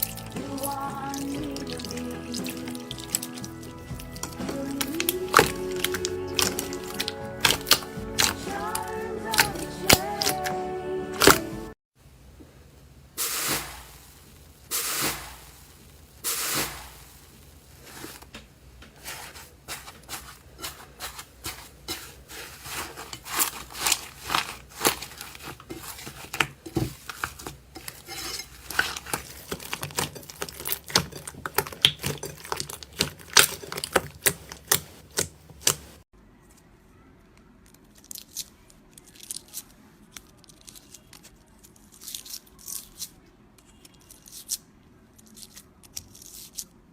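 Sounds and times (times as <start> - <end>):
slime squishy swishes: 0.0 - 10.4, 13.2 - 18.3, 18.9 - 36.0
slime crackling pops: 4.2 - 8.4, 13.2 - 17.4, 28.7 - 35.9.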